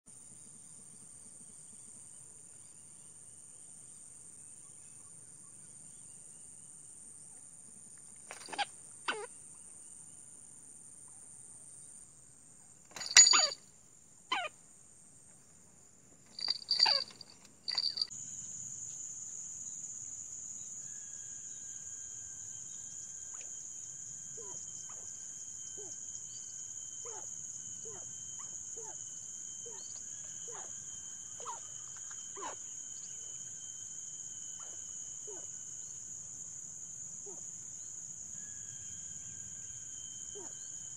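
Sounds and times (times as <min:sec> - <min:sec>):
crickets chirping: 0:00.1 - 0:40.9
knocks and clattering: 0:12.9 - 0:13.6
faint steady tones: 0:16.2 - 0:19.0, 0:19.6 - 0:40.9.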